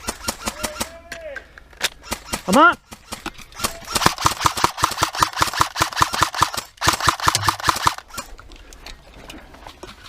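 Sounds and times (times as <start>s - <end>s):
airsoft gun firing full-auto: 2.0s - 8.2s.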